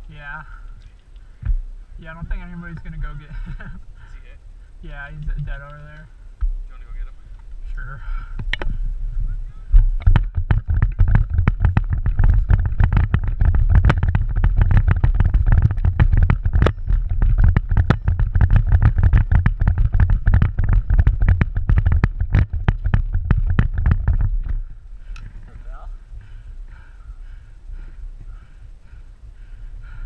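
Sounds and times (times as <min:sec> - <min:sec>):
wind rumble on microphone: 0:01.0 - 0:30.0
running footsteps and gear clatter: 0:09.7 - 0:30.0.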